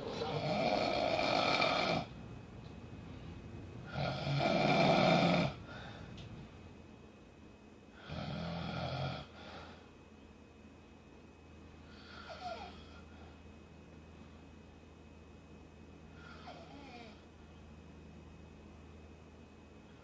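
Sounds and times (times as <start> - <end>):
person snoring: 0.0 - 2.1, 3.9 - 5.6.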